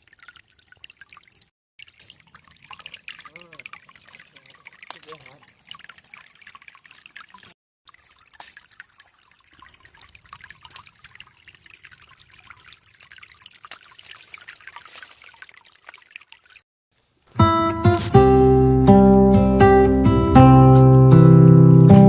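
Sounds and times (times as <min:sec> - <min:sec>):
water trickling and dripping: 0:00.0 - 0:16.7.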